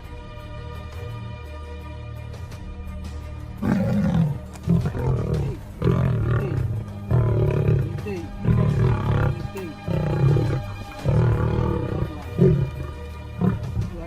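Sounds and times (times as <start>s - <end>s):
background music: 0.0s - 14.0s
large animal giving low calls: 3.6s - 14.0s.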